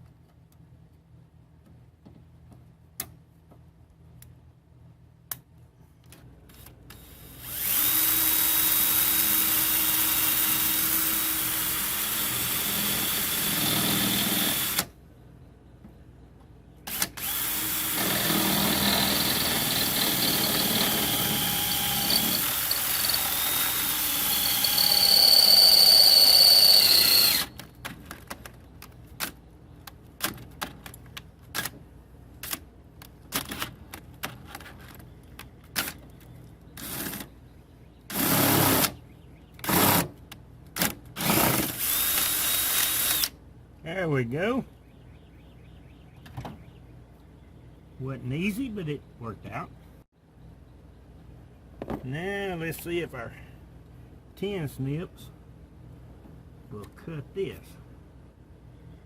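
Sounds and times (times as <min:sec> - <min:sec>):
power tool cutting cable: 0:07.4 - 0:14.9, 0:16.9 - 0:27.6, 0:41.2 - 0:43.3.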